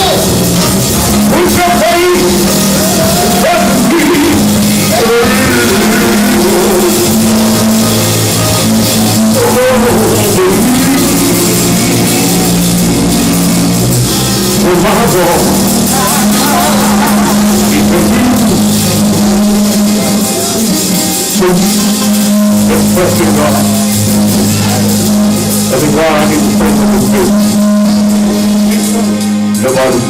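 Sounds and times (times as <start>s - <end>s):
live praise band music: 0.0s - 30.0s
low bass notes: 0.0s - 30.0s
people singing: 2.5s - 13.7s, 14.8s - 21.2s.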